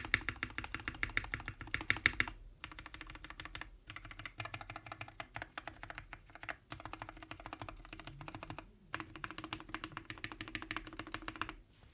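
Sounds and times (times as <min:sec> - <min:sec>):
mechanical keyboard typing clacks: 0:00.0 - 0:11.6.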